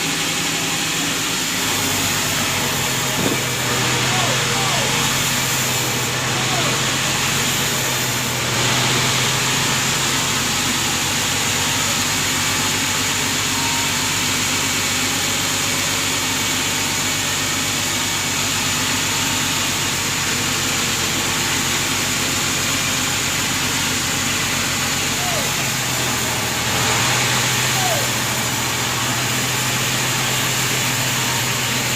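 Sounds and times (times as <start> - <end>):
low engine hum: 0.0 - 12.2.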